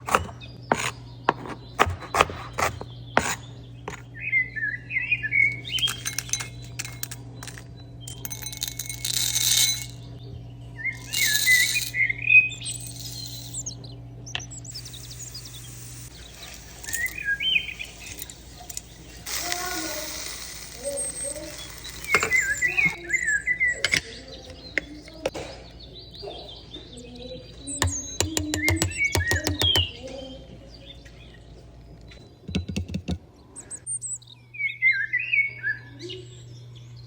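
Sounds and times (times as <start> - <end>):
birds chirping: 0.0 - 37.0
steady low hum: 0.0 - 37.0
bursts of hiss: 14.8 - 23.0.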